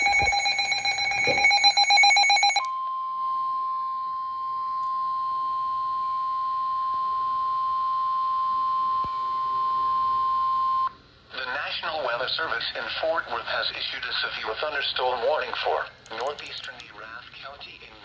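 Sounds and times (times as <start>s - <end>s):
electronic alert beeping rapidly: 0.0s - 2.6s
steady high alarm tone: 0.0s - 10.9s.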